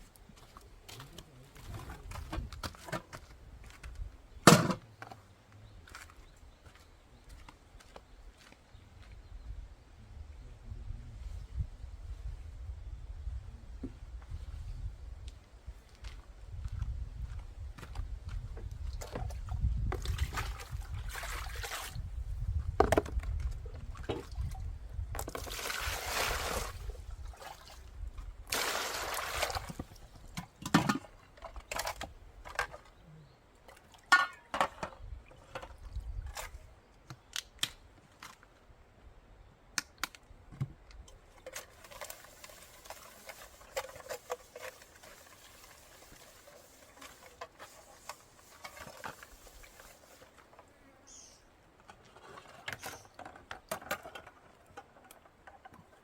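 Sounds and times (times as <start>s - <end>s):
water pouring and splashing: 18.8s - 22.1s, 25.2s - 30.3s, 41.4s - 50.6s.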